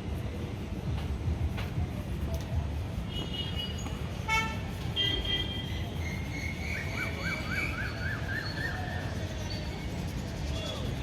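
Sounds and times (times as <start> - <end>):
street traffic rumble: 0.0 - 11.0
vehicle horns: 3.1 - 5.8.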